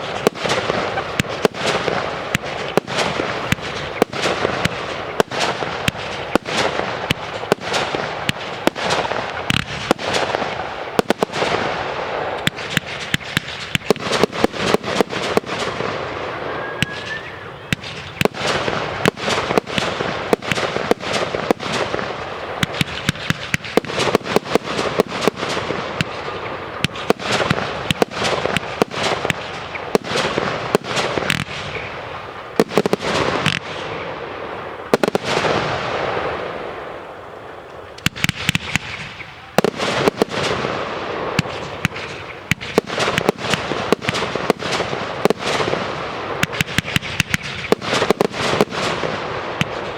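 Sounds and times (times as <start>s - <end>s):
fireworks bangs and crackling: 0.0s - 49.9s
firework rising whistle: 16.0s - 19.5s.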